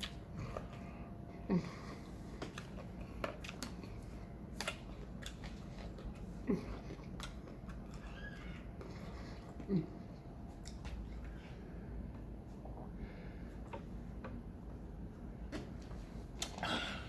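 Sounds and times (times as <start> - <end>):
chewing and mouth sounds: 0.0 - 1.0, 1.7 - 11.4.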